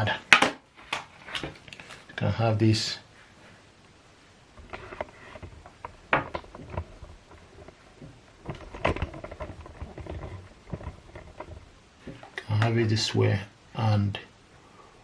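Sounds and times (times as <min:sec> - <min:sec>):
plastic keyboard clicks and knocks: 0:04.7 - 0:07.7, 0:08.4 - 0:12.3.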